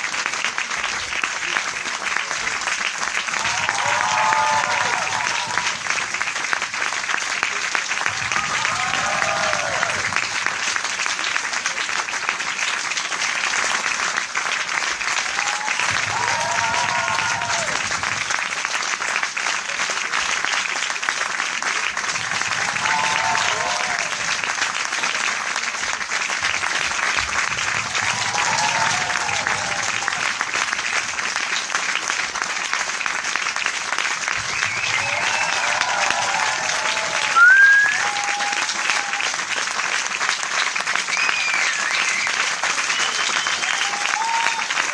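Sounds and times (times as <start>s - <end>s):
crowd applauding: 0.0s - 44.9s
voices cheering: 3.4s - 6.0s, 8.0s - 10.2s, 15.2s - 17.8s, 22.6s - 24.3s, 27.9s - 30.3s, 34.5s - 39.4s, 41.1s - 44.9s.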